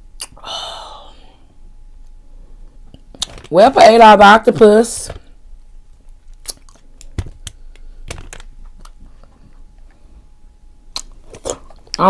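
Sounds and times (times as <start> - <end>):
wet mouth clicks: 0.2 - 0.4, 6.3 - 6.8, 10.9 - 11.2
chewing and biting food: 6.2 - 7.9.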